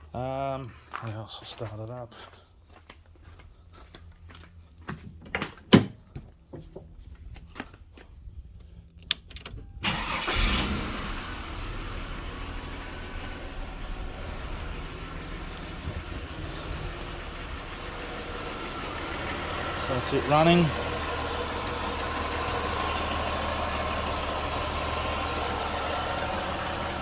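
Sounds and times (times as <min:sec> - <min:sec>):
car engine starting and idling: 0:08.6 - 0:27.0.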